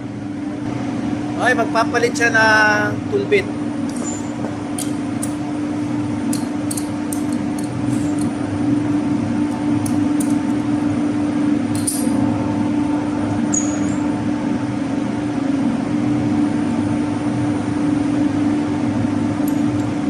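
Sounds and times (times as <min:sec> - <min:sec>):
low machinery hum: 0:00.0 - 0:20.0
light metallic clinks and taps: 0:03.9 - 0:05.4.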